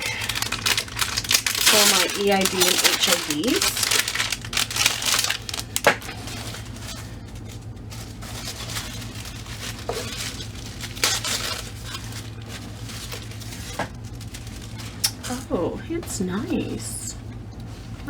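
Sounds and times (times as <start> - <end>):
plastic packaging crinkling: 0.0 - 15.6.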